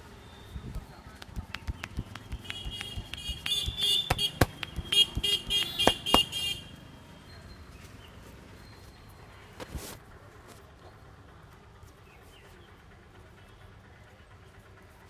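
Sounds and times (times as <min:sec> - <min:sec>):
hands slapping a head: 0:01.2 - 0:06.6.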